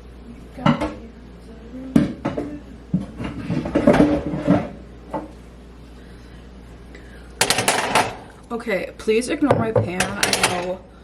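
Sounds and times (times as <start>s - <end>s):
baking pan knocking: 7.4s - 8.2s, 9.5s - 10.8s
utensils clattering and rattling: 7.4s - 8.2s, 9.9s - 10.8s.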